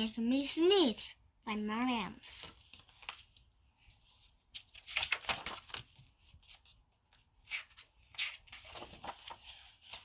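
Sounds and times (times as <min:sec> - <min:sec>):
paper pages rustling: 0:02.3 - 0:10.0.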